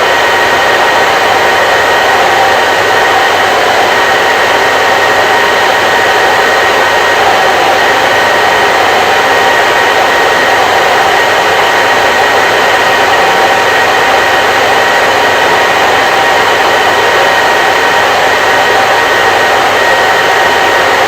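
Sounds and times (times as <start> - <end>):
hair dryer running: 0.0 - 21.0.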